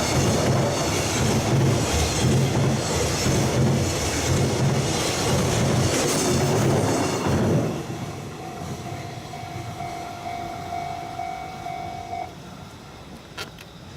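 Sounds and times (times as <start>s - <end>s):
freight train rolling past: 0.0s - 13.9s
pulsing ringing tone: 8.4s - 12.4s.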